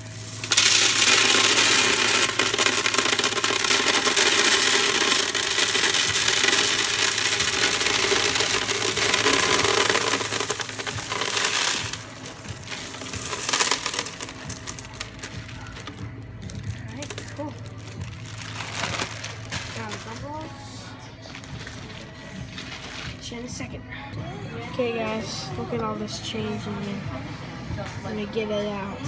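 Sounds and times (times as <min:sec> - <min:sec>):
gumballs rattling: 0:00.0 - 0:23.0.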